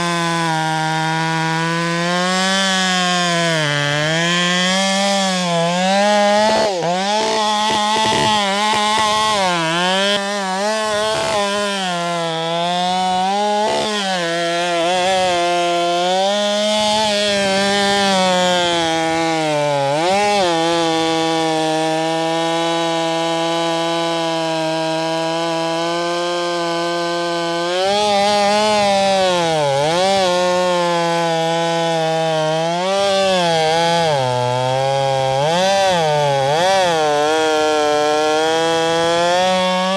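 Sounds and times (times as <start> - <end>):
chainsaw cutting wood at full throttle: 0.0 - 39.9.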